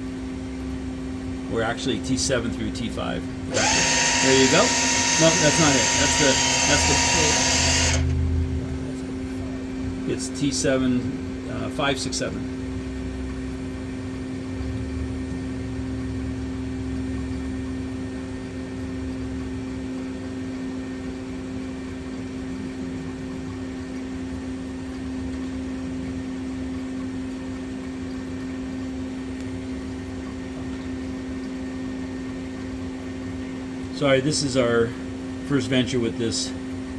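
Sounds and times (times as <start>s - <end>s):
low machine rumble: 0.0s - 19.7s
lathe machine hum: 3.5s - 8.5s.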